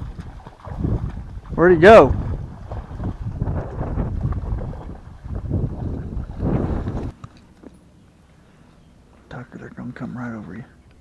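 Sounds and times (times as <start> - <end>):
wind buffeting microphone: 0.0 - 7.2.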